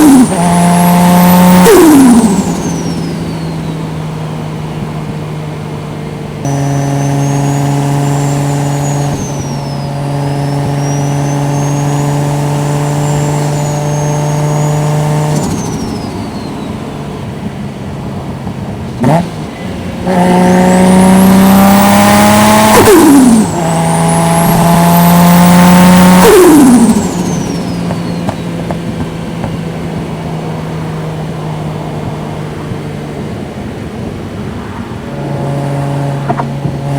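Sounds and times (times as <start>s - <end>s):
car engine cruising: 0.0s - 36.9s
engine throttle blip: 6.4s - 17.0s
rising turbo whistle: 6.5s - 16.9s, 20.1s - 28.6s.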